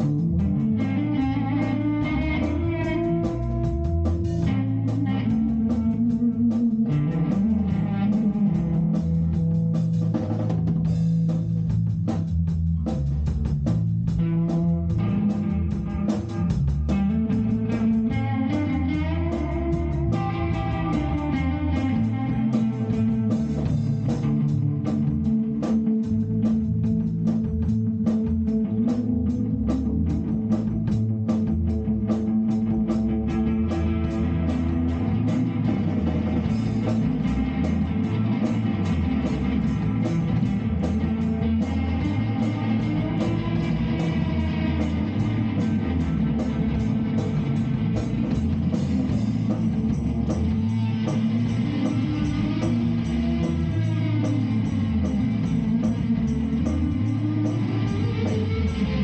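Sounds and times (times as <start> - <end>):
bass guitar: 0.0 - 59.0
drum kit: 0.0 - 59.0
electric guitar bending notes: 0.0 - 59.0.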